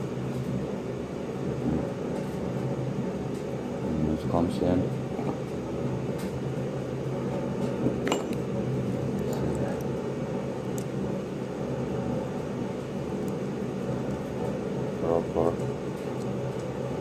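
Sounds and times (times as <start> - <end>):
low machine hum: 0.0 - 17.0
light metallic clinks: 8.0 - 8.5.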